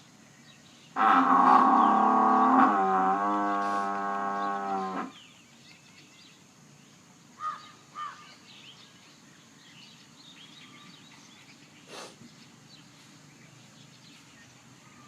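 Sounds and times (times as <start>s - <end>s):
birds calling: 0.0s - 15.0s
faint bird chirping: 0.0s - 15.0s
buffalo bellowing: 1.0s - 5.2s.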